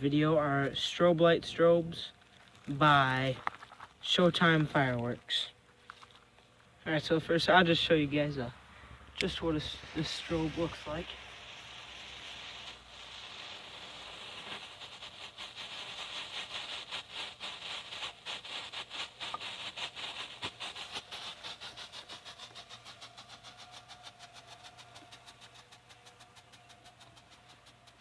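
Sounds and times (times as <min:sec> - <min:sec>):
firework hissing and sputtering: 0:07.3 - 0:28.0.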